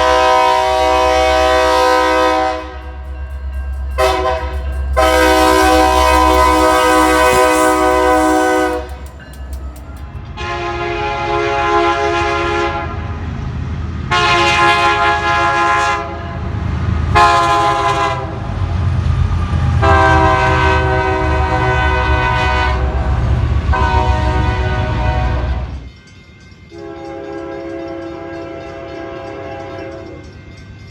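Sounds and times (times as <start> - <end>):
locomotive air horn blasts: 0.0 - 3.0, 4.0 - 9.2, 10.4 - 13.2, 14.1 - 16.4, 17.1 - 18.4, 19.8 - 25.8, 26.8 - 30.2
low train rumble: 0.0 - 30.9.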